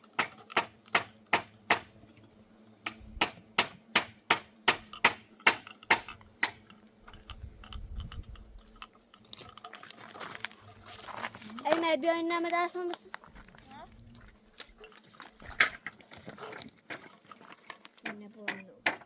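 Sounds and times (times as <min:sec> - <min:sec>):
hammer striking wood: 0:00.1 - 0:02.0, 0:02.8 - 0:06.7, 0:18.5 - 0:19.0.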